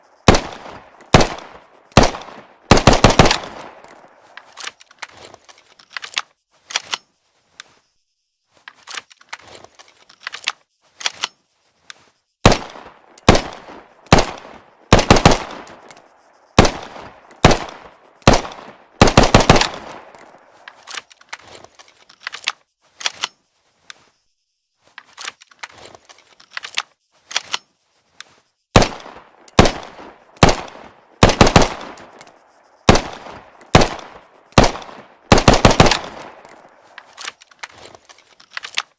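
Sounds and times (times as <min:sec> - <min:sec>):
pistol shots with echo: 0:00.3 - 0:03.8, 0:12.5 - 0:15.8, 0:16.6 - 0:20.2, 0:28.8 - 0:32.0, 0:32.9 - 0:36.7.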